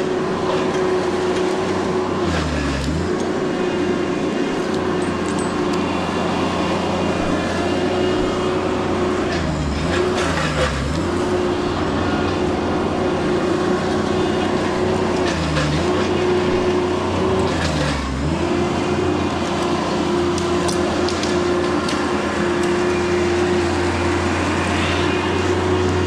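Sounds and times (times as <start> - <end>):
chainsaw revving: 0.0 - 26.0.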